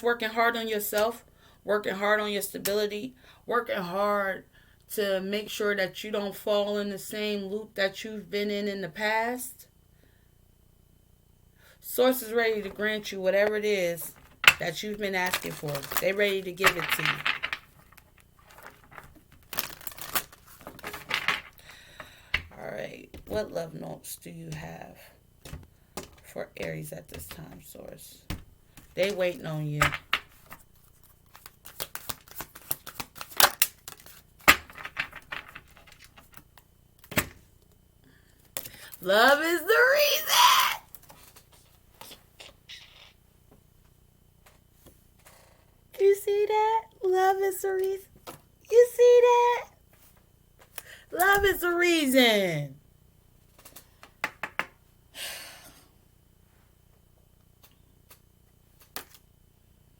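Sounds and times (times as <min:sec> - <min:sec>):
cards being shuffled: 0:12.5 - 0:22.5, 0:28.8 - 0:37.4, 0:40.9 - 0:43.1, 0:53.5 - 0:54.1, 0:57.6 - 0:59.2
cards clicking: 0:31.3 - 0:37.2, 0:58.8 - 0:59.2.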